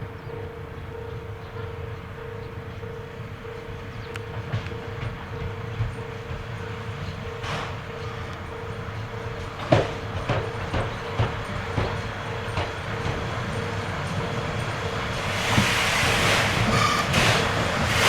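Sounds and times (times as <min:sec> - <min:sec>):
train rumbling on rails: 0:00.0 - 0:18.0
wheels knocking over rail joints: 0:15.0 - 0:18.0.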